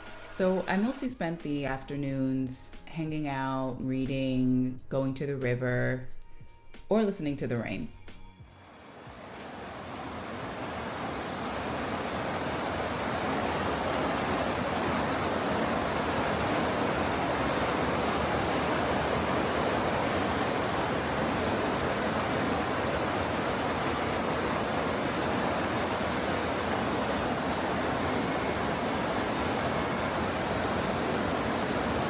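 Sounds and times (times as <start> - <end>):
running water rushing: 8.7 - 32.0.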